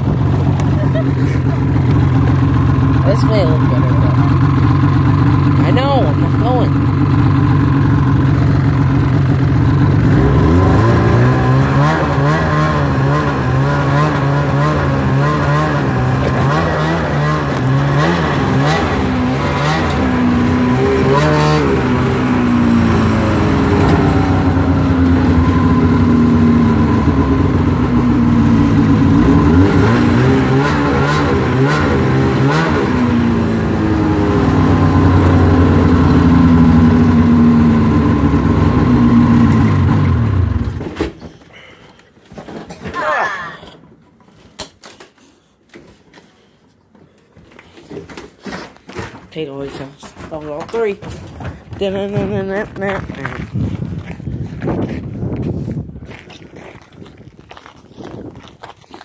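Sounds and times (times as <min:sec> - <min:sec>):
snowmobile engines revving: 0:09.9 - 0:40.6.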